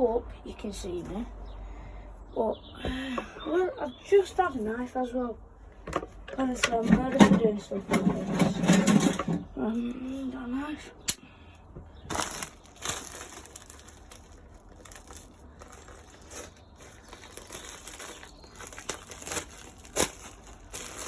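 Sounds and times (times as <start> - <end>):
sharp snaps: 11.0 - 11.3
bag crinkling and crackling: 12.1 - 21.0.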